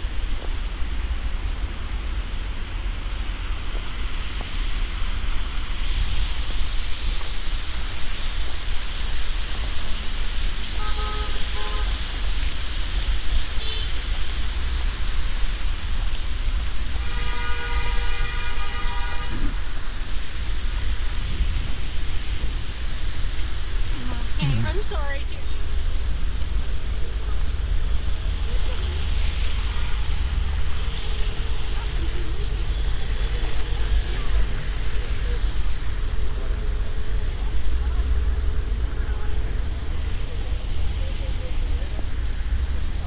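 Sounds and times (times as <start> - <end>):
traffic rumble: 0.0 - 43.0
car horn: 10.8 - 12.1, 13.6 - 13.9, 17.0 - 19.6.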